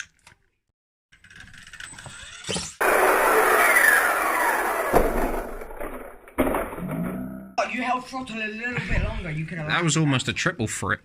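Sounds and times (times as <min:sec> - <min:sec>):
rc car motor whirring: 0:01.6 - 0:05.7.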